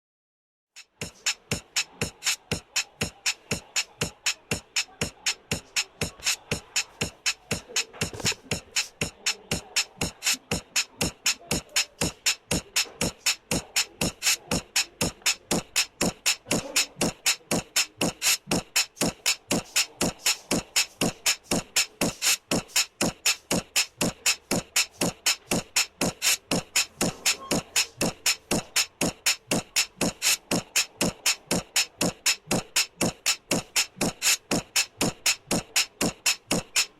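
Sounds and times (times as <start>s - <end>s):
sharp percussive hits: 0.8s - 36.9s.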